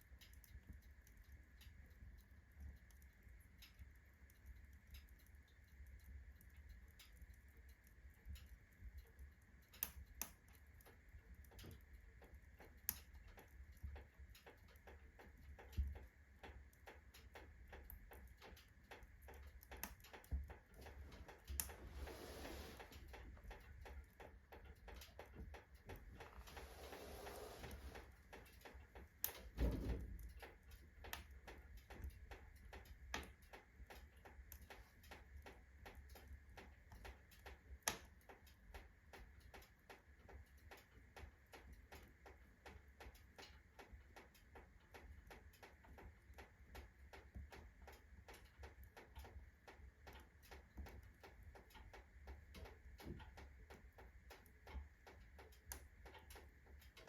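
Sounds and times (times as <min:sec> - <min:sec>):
wood fire crackling: 0:00.0 - 0:57.0
metal stove ticking and knocking: 0:02.7 - 0:21.8, 0:22.8 - 0:27.0, 0:27.6 - 0:57.0
fire hissing: 0:21.2 - 0:23.6, 0:26.2 - 0:28.5.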